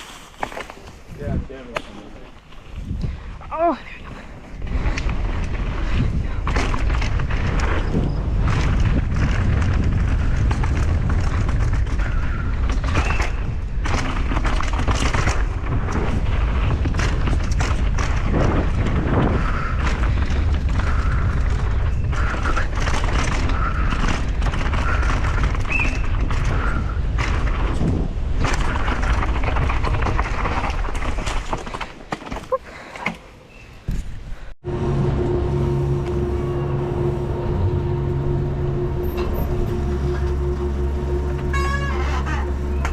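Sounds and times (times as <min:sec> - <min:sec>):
mountain bike rattling over trail: 0:00.0 - 0:33.7
wind buffeting microphone: 0:01.0 - 0:01.8, 0:02.6 - 0:31.5.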